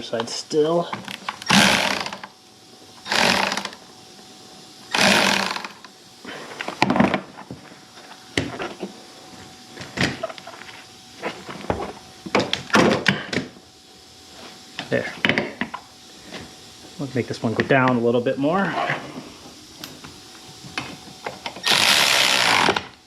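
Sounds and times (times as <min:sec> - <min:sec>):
handheld power tool running: 0:01.0 - 0:02.4, 0:03.0 - 0:03.8, 0:04.8 - 0:05.9, 0:21.4 - 0:23.0.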